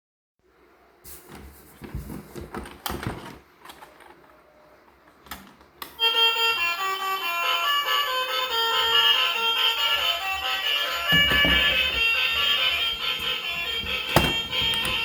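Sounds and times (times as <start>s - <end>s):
melodic music: 6.0s - 15.0s.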